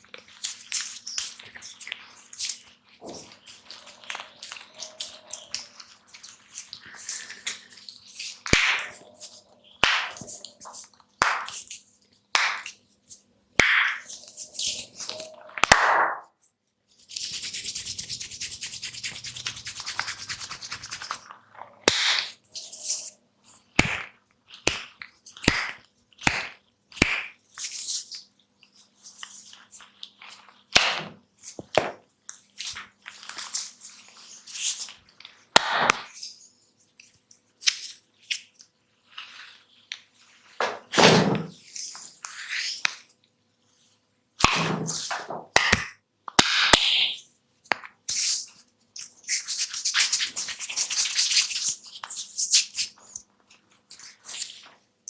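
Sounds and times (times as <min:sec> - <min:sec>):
fast scratchy rubbing: 0:17.0 - 0:21.3.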